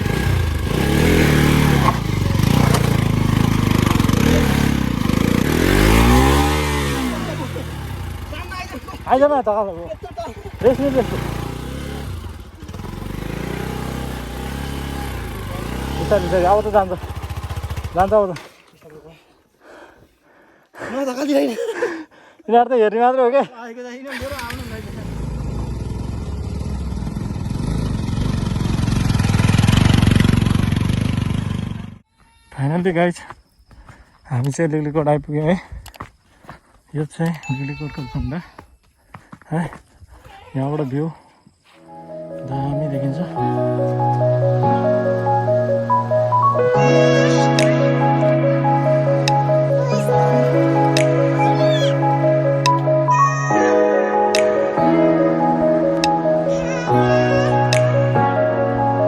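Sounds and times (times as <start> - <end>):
motorcycle engine revving: 0.0 - 18.4, 24.1 - 32.0, 43.6 - 53.1.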